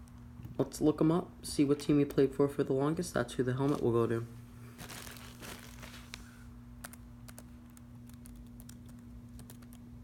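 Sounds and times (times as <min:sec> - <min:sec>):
keyboard typing: 0:06.8 - 0:10.0.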